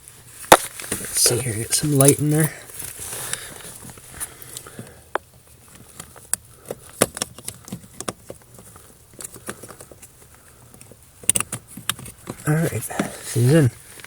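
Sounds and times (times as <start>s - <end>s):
clicks and taps under dashboard: 4.8s - 13.2s.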